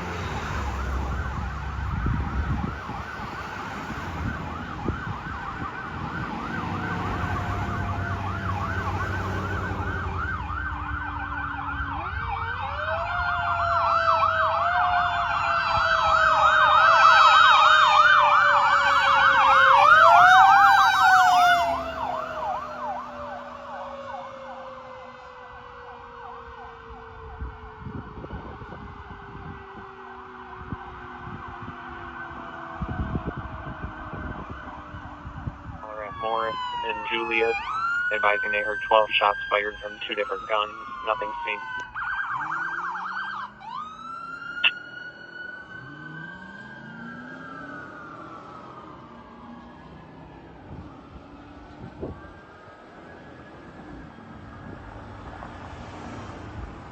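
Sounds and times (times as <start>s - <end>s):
electronic siren yelp: 4.1s - 24.6s, 33.0s - 49.6s.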